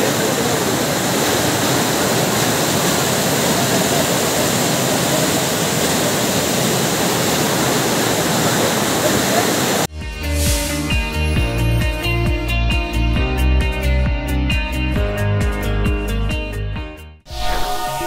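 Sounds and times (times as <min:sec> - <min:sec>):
floodwater rushing down stone steps: 0:00.0 - 0:09.9.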